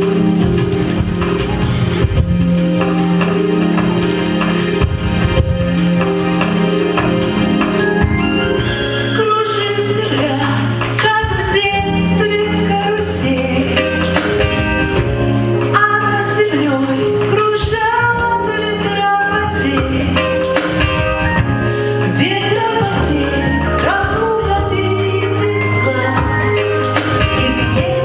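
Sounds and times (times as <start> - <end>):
instrumental backing with bass: 0.0 - 28.0
woman singing: 9.1 - 15.0, 15.7 - 28.0.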